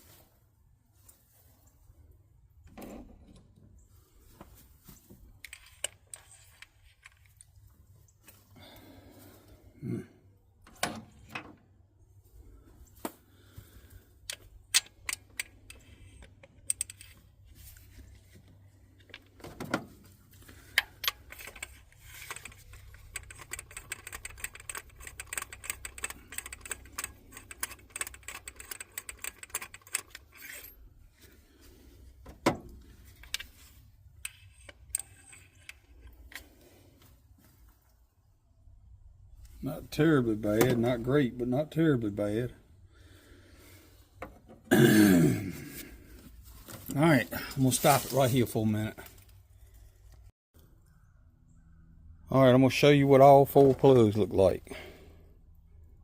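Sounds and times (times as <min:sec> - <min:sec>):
ratchet clicks: 0:20.8 - 0:30.6.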